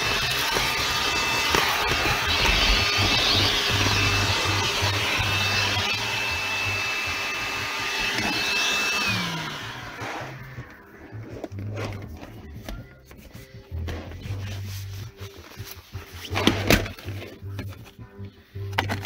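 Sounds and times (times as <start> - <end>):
vacuum cleaner whining: 0.0 - 12.8.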